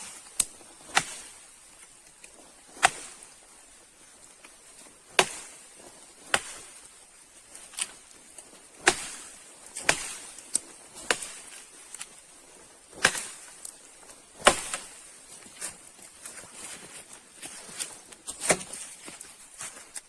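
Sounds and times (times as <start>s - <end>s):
wood being chopped: 0.4s - 1.3s, 2.7s - 3.2s, 5.1s - 5.6s, 6.3s - 6.7s, 8.8s - 10.4s, 11.0s - 11.6s, 12.9s - 13.6s, 14.4s - 15.0s, 18.3s - 18.8s.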